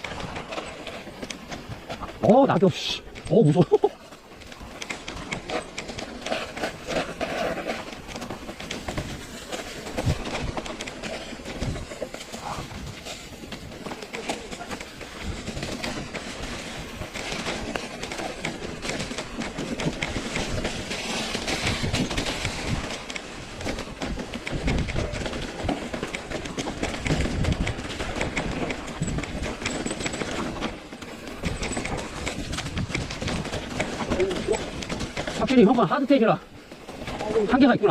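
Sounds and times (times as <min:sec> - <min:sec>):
bike clicks and knocks over bumps: 0:00.0 - 0:37.9
bike tyres crunching over leaves: 0:00.0 - 0:37.9.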